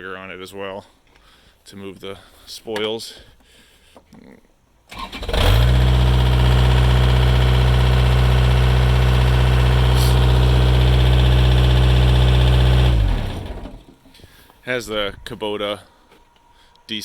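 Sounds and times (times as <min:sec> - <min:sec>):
diesel engine running: 0:04.9 - 0:14.0.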